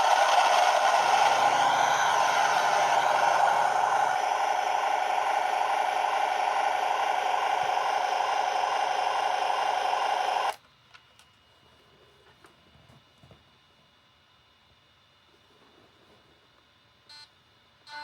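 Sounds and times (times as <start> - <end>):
gearbox buzzing: 0.0 - 10.5.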